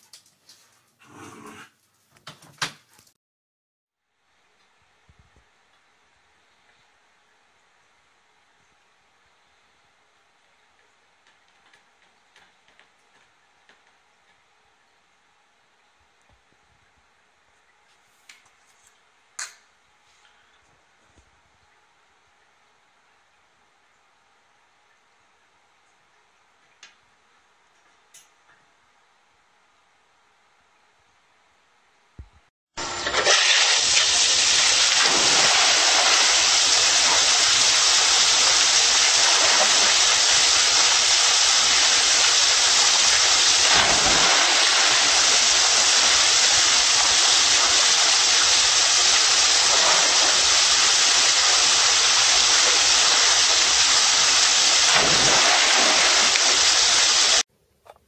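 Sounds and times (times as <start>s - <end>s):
loud steady rushing hiss: 32.8s - 57.4s.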